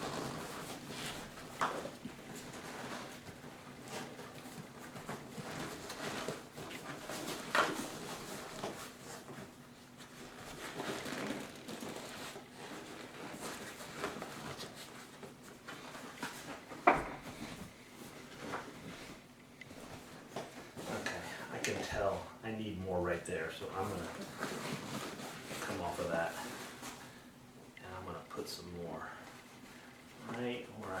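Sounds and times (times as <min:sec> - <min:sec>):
fabric rustling and scraping on foam: 0:00.0 - 0:22.2, 0:23.6 - 0:27.2.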